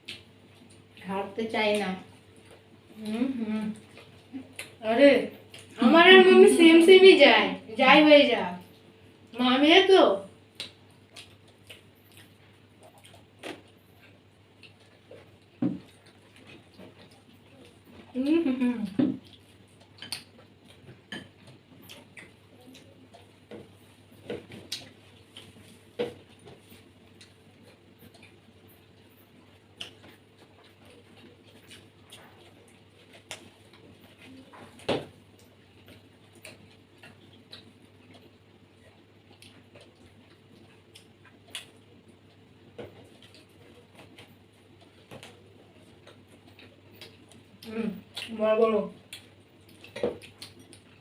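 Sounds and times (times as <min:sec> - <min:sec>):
people chewing food: 0:00.0 - 0:07.1, 0:10.2 - 0:51.0
low steady hum: 0:00.0 - 0:51.0
hands and food on plates: 0:10.5 - 0:51.0.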